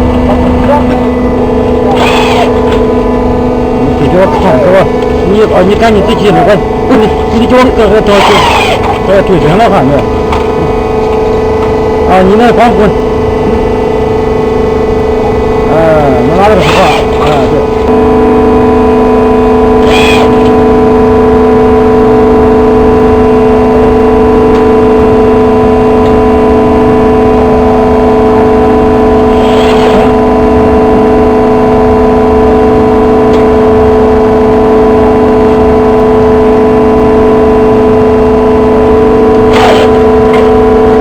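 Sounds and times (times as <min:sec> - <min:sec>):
baler mechanical hum: 0:00.0 - 0:41.0
short high-pitched noises: 0:00.6 - 0:03.0, 0:03.6 - 0:10.1, 0:15.2 - 0:20.8, 0:39.2 - 0:40.3.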